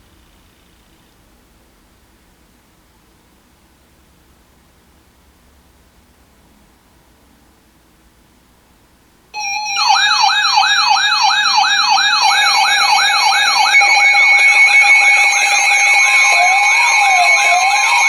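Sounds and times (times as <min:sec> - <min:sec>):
electronic sirens yelping: 0:09.4 - 0:18.0.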